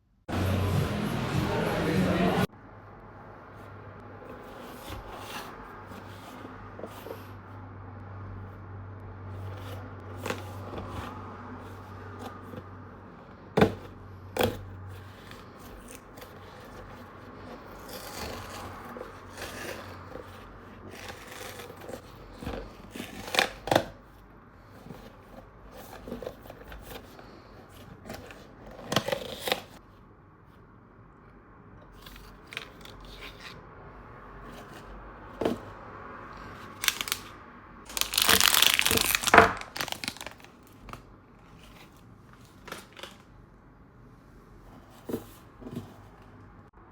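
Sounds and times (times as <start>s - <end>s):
packaging rustling and scraping: 4.2s - 7.6s, 9.3s - 12.8s, 13.4s - 29.9s, 32.0s - 33.6s, 34.4s - 43.4s, 44.6s - 46.4s.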